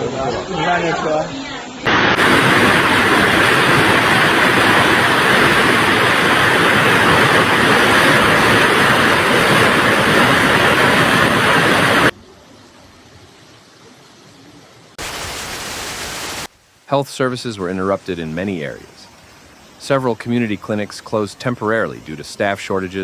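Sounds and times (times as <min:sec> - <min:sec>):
loud rushing noise: 0:01.9 - 0:12.1.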